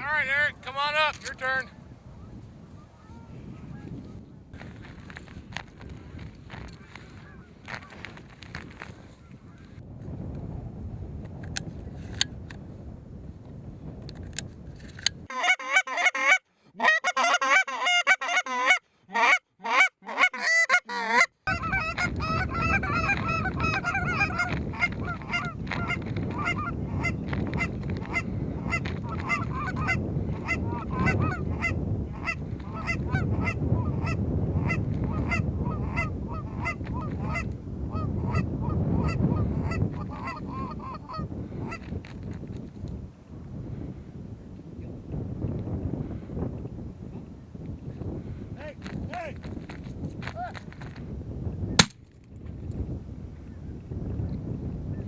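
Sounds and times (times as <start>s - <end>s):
wind noise on microphone: 0.0s - 16.3s, 21.4s - 55.0s
geese clucking: 15.3s - 41.8s
geese honking: 15.3s - 41.8s.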